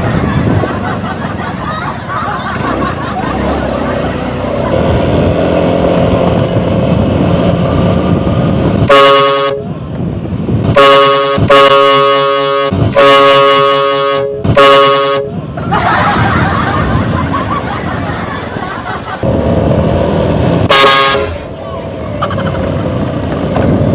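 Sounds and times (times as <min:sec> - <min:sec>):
street traffic: 0:00.0 - 0:23.9
bus horn blasts: 0:08.8 - 0:09.8, 0:10.7 - 0:15.6, 0:20.6 - 0:21.6.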